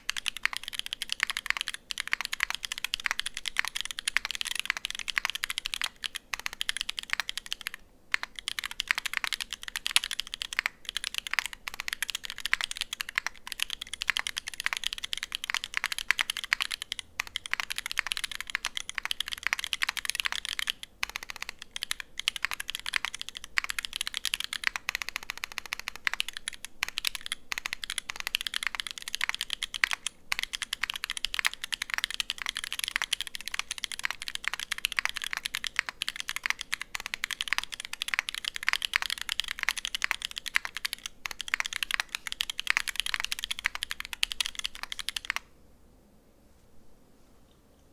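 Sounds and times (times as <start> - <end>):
fast typing on mechanical keyboard: 0.0 - 45.5.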